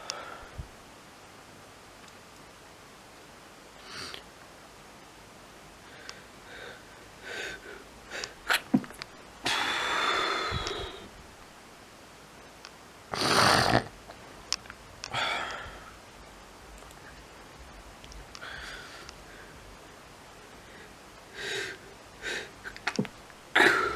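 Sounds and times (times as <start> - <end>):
person sneezing: 23.6 - 23.9.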